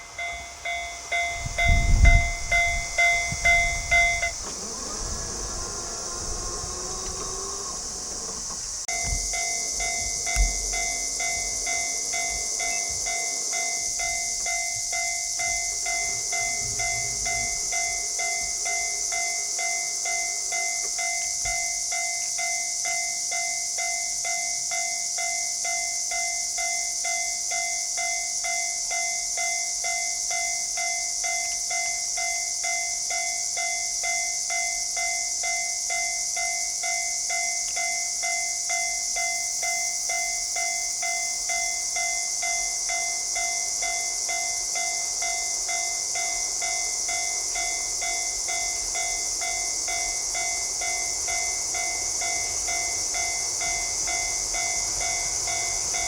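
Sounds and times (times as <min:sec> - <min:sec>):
steady high hiss: 0:00.0 - 0:56.0
low rumble: 0:01.4 - 0:20.8
level crossing bell ringing: 0:08.9 - 0:25.4.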